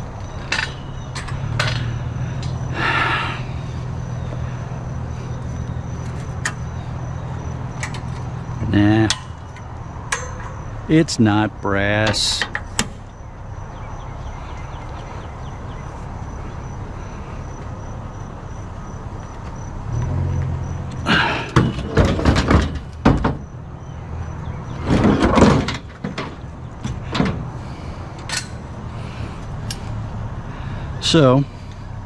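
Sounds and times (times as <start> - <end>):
truck engine humming: 0.0 - 32.0
metal scrap clanking and scraping: 0.2 - 2.7, 7.7 - 10.8, 21.1 - 23.5, 24.6 - 27.6.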